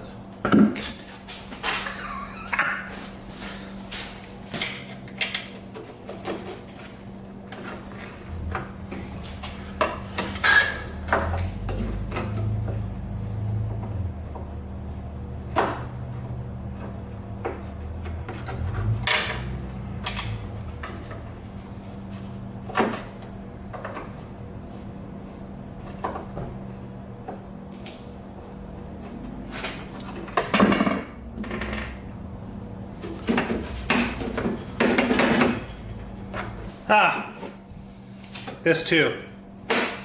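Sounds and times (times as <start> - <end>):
screwdriver and metal clanks: 34.8 - 36.6.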